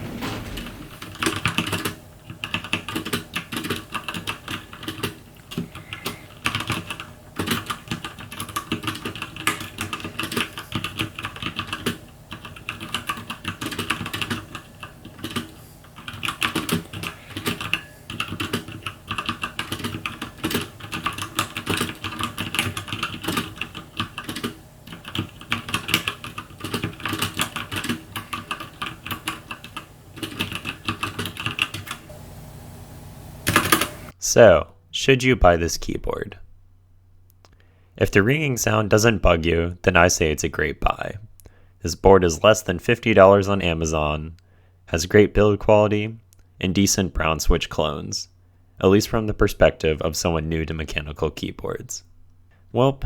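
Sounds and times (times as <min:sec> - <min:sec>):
mechanical keyboard typing: 0:00.2 - 0:32.1, 0:33.5 - 0:34.0.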